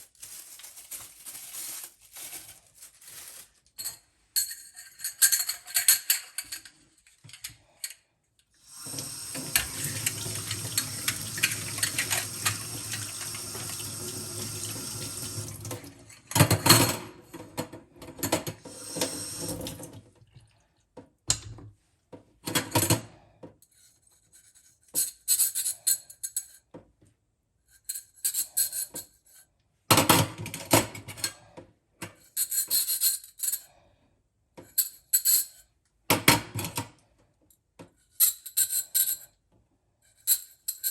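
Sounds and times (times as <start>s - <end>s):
kitchen tap running: 8.6s - 16.3s, 18.6s - 20.1s.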